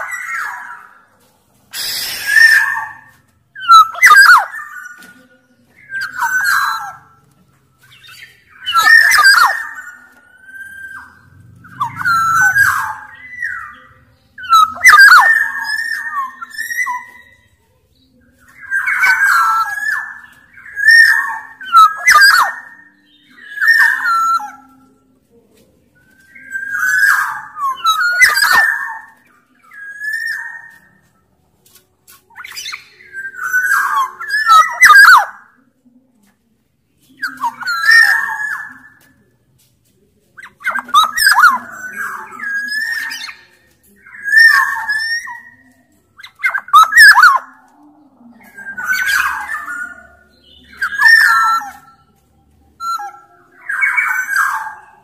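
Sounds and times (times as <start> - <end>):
oriole singing fluty whistles: 1.7 - 5.1, 7.9 - 17.5, 18.5 - 24.6, 26.1 - 31.0, 32.3 - 35.6, 40.4 - 45.6, 46.2 - 47.6, 48.5 - 52.0.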